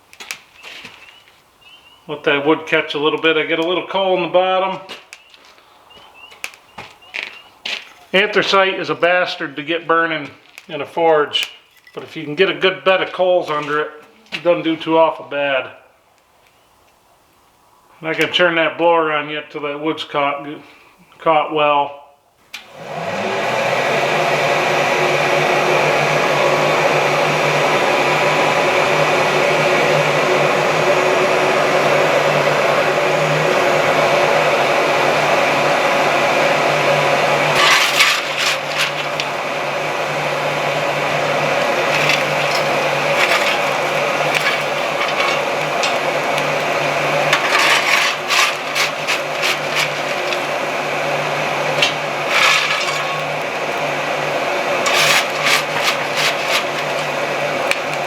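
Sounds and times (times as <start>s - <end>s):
electric fan humming: 22.4s - 58.0s.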